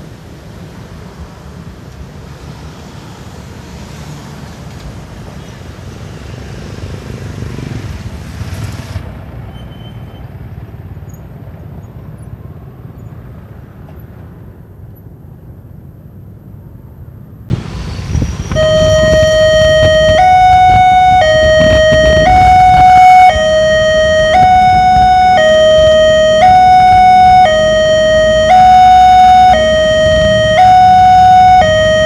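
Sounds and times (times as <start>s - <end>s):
low traffic rumble: 0.0s - 32.0s
vehicle passing: 17.5s - 32.0s.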